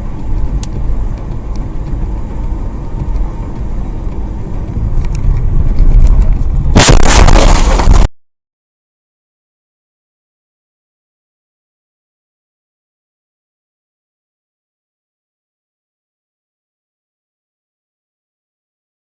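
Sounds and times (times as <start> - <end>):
car road and engine rumble: 0.0 - 8.1
loud harsh collision noise: 6.8 - 8.1.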